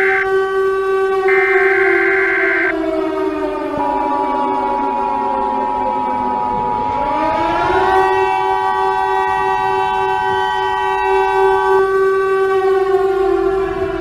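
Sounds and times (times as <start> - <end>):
two-tone alert signal: 0.0 - 0.2, 1.3 - 2.7
outdoor warning siren wailing: 0.0 - 14.0.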